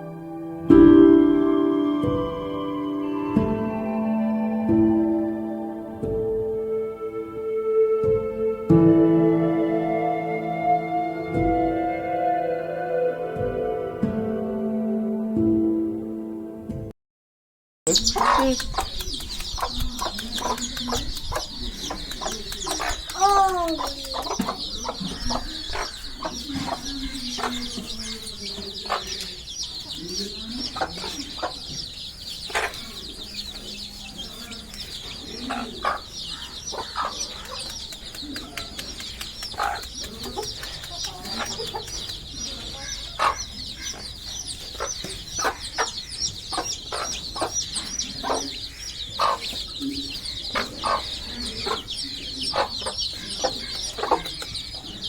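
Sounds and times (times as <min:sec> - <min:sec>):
chicks peeping: 0:17.9 - 0:55.0
hen clucking softly: 0:17.9 - 0:55.0.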